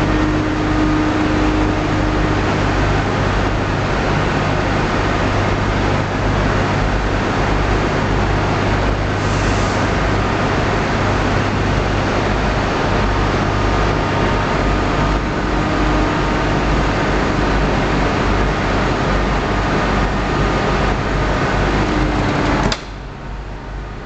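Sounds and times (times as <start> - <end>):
hydraulic pump droning: 0.0 - 23.8
switch click: 22.4 - 23.0.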